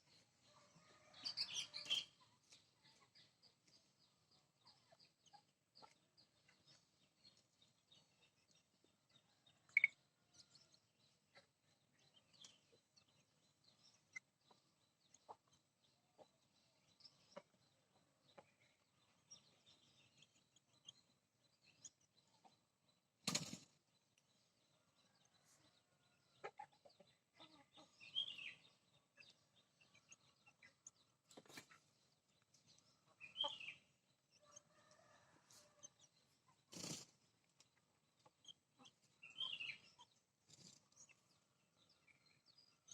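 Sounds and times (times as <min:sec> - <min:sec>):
chickens clucking: 0:14.0 - 0:16.5, 0:25.5 - 0:31.9, 0:32.6 - 0:40.9.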